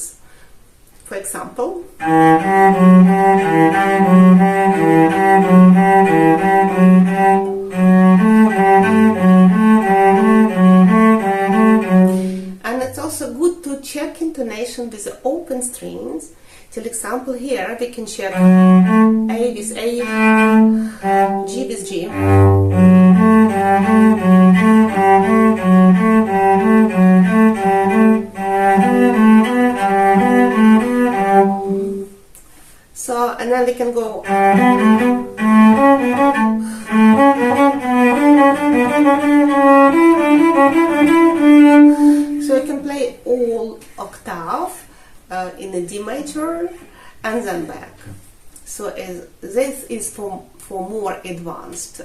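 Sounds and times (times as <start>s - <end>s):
cello bowed notes: 2.0s - 13.4s, 18.2s - 32.2s, 33.8s - 43.1s.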